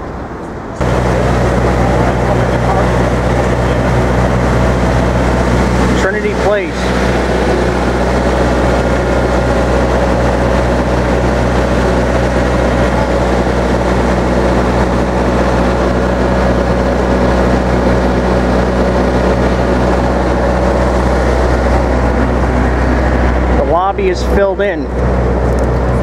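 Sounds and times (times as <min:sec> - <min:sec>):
truck engine idling: 0:00.8 - 0:26.0.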